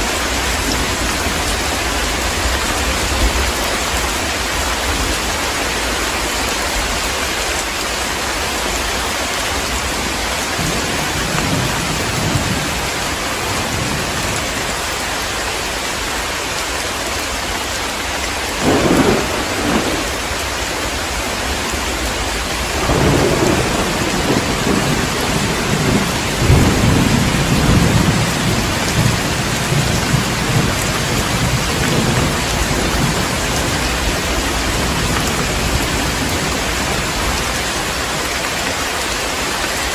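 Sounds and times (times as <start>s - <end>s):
heavy rain falling: 0.0s - 39.9s
thunder rumbling: 10.0s - 15.0s, 18.6s - 38.0s.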